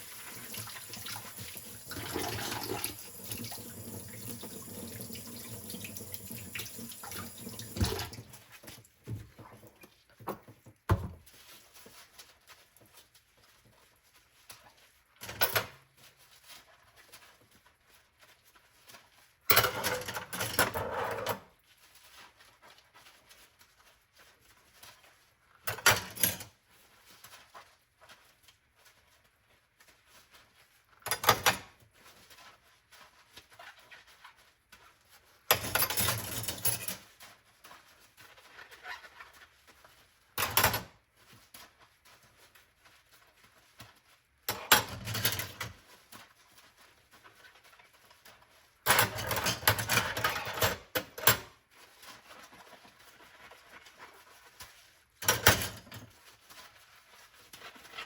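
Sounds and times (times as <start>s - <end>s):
water splashing: 0.0s - 8.5s.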